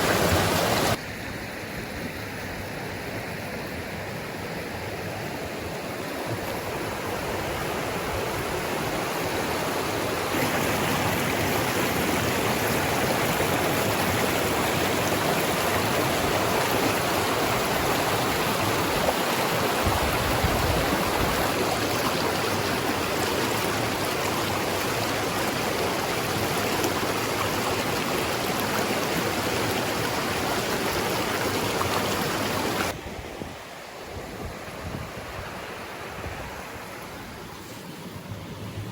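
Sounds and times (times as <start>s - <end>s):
stream rushing over cascades: 0.0s - 38.9s.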